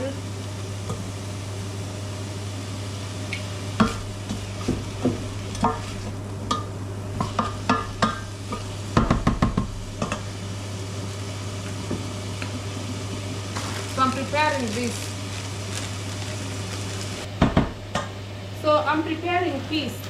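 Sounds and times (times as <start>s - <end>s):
steady low hum: 0.0s - 20.0s
vegetables stirred in oil: 2.9s - 10.4s, 11.2s - 17.3s
utensil knocking and scraping pot: 3.8s - 10.2s.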